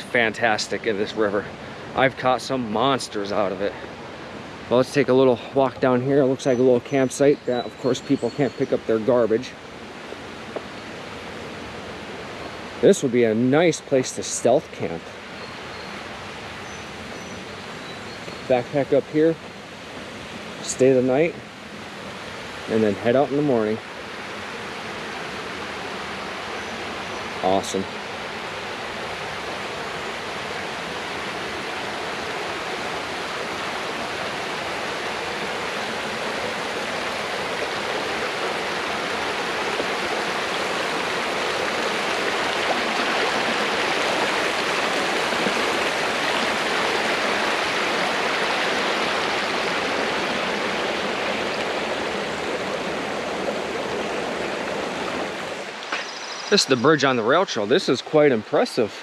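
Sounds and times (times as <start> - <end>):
river rushing over rocks: 19.4 - 59.0.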